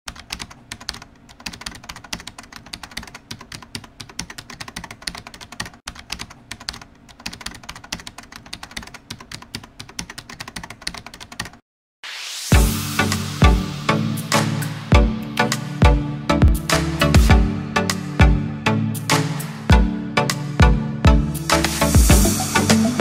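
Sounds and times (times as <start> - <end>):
rapid irregular clicking: 0.1 - 11.6.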